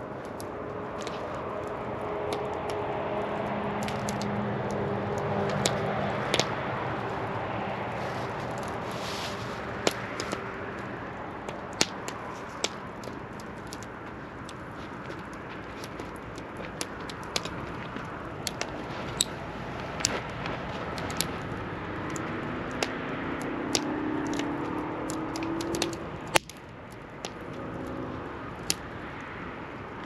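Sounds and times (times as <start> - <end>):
burning logs popping: 0.0 - 30.0
campfire crackling: 0.0 - 30.0.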